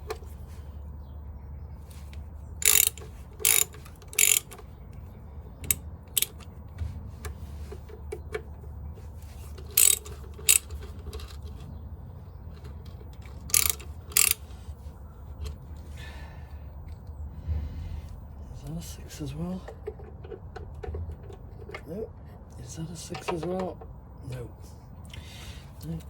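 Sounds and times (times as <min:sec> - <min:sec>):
ratchet wrench clicking: 0:02.6 - 0:04.6, 0:05.6 - 0:06.4, 0:09.7 - 0:10.8, 0:13.5 - 0:14.4.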